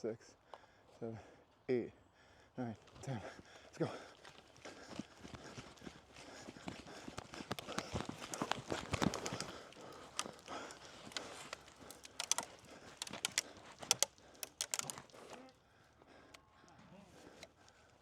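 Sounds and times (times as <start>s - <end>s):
running footsteps on ground: 2.8s - 18.0s
gear rattling: 7.2s - 15.4s
sharp high clicks: 7.4s - 15.4s.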